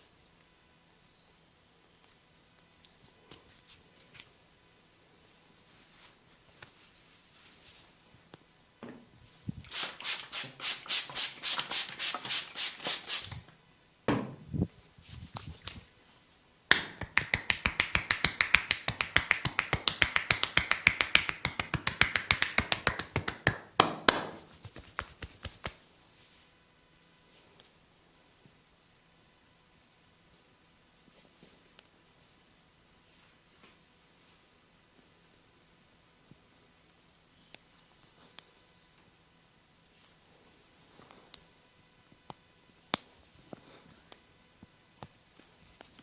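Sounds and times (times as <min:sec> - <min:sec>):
hands tapping on a head: 0:16.7 - 0:25.8.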